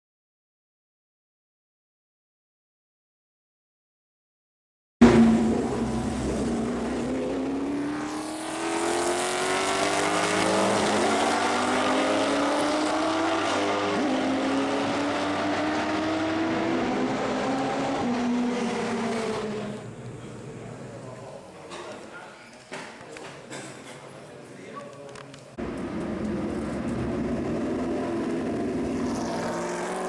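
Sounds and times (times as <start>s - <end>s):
race car engine accelerating: 5.0s - 21.1s, 25.6s - 30.0s.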